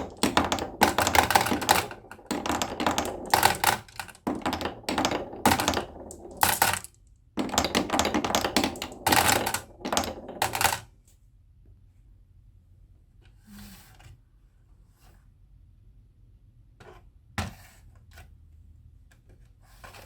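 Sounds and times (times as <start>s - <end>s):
marbles clattering down wooden run: 0.0s - 10.8s.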